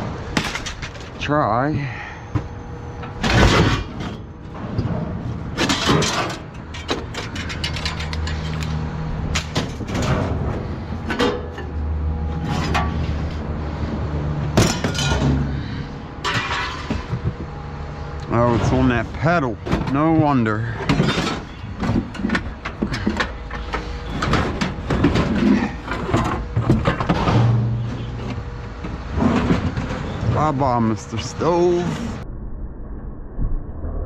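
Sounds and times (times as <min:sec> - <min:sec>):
bicycle frames clanking and rattling: 0:00.4 - 0:01.4, 0:02.4 - 0:13.4, 0:14.5 - 0:17.5, 0:19.6 - 0:30.5
sharp metal bangs: 0:02.7 - 0:04.7.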